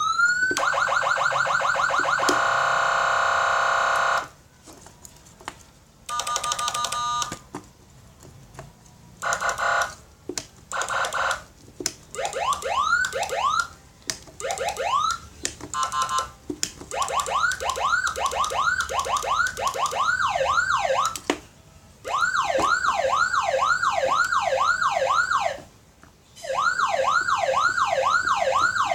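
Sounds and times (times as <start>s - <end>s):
electronic siren alarm tones: 0.0s - 4.4s, 9.2s - 10.0s, 10.7s - 11.5s, 12.1s - 13.8s, 14.4s - 21.3s, 22.0s - 25.7s, 26.4s - 28.9s.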